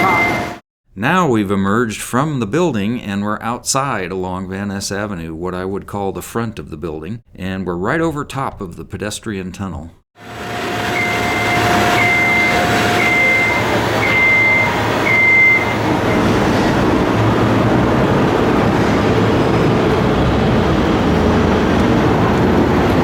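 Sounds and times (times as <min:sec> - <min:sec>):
reversing alarm beeping: 0:00.0 - 0:00.6, 0:10.2 - 0:18.2
street traffic: 0:00.0 - 0:00.6, 0:10.2 - 0:23.0
heavy vehicle rumble: 0:10.2 - 0:23.0.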